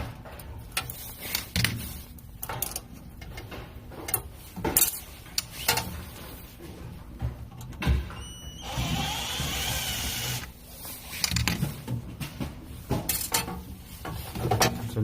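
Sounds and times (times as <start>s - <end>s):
clicks and knocks of metal parts: 0.0s - 6.2s, 11.2s - 15.0s
electric screwdriver running: 8.6s - 10.5s.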